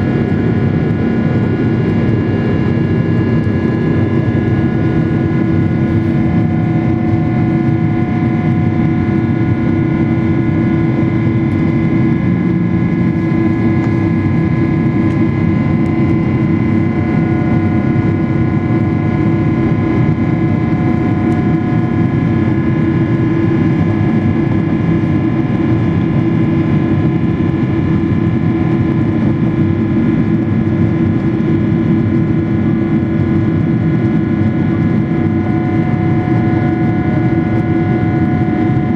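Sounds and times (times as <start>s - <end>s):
jet engine roar with whining tones: 0.0s - 38.9s.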